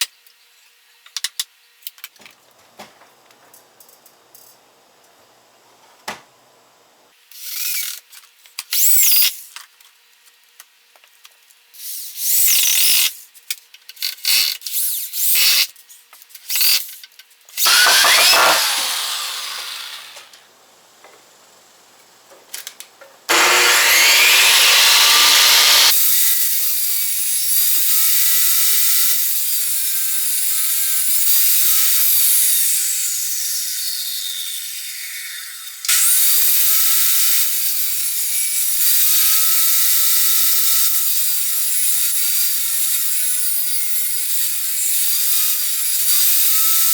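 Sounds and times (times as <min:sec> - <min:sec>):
power tools cutting wood: 0:17.6 - 0:20.4, 0:23.3 - 0:46.9.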